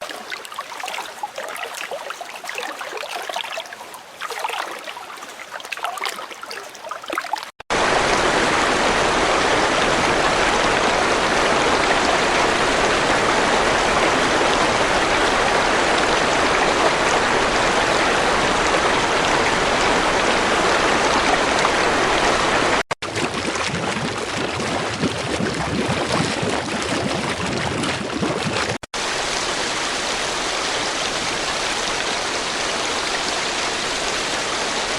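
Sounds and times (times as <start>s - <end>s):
running water: 0.0s - 34.9s.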